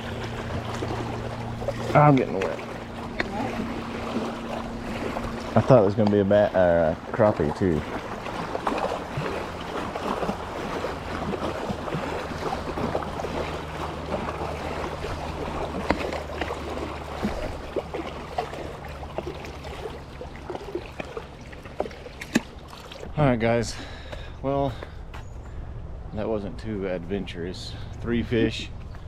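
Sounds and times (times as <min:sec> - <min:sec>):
water running and trickling: 0:00.0 - 0:23.8
low steady hum: 0:00.0 - 0:29.0
small splashy clicks: 0:11.0 - 0:23.1.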